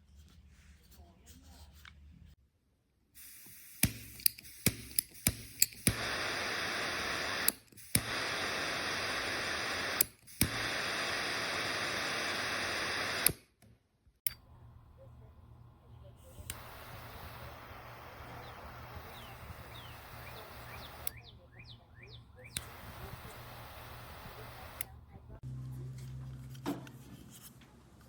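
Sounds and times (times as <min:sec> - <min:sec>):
torch jets hissing: 0:03.2 - 0:13.4, 0:14.7 - 0:25.4
lighter ignition clicks: 0:03.2 - 0:13.6, 0:16.2 - 0:21.7, 0:22.4 - 0:25.0.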